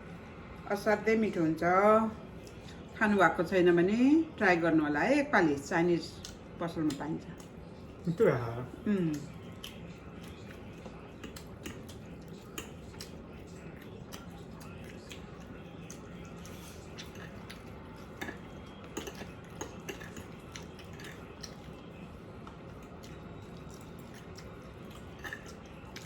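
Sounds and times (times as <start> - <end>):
steady low hum: 0.0 - 26.0
chewing: 6.1 - 26.0
cutlery clicking against dishes: 11.2 - 13.1, 18.2 - 21.6.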